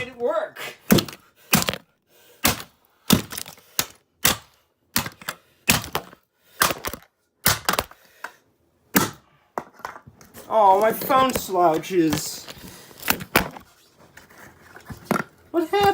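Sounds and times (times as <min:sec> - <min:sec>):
blows smashing plastic: 0:00.8 - 0:08.0.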